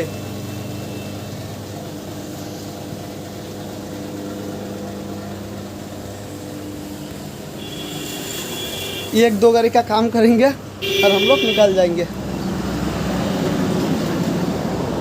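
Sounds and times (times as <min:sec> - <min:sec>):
engine humming: 0:00.0 - 0:15.0.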